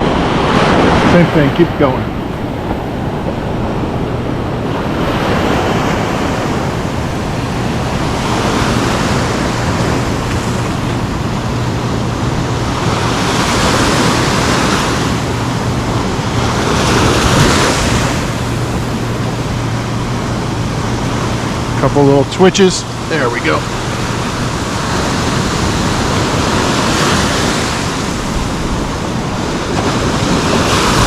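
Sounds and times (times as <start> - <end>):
ocean surf breaking on beach: 0.0 - 31.0
wind buffeting microphone: 0.0 - 31.0.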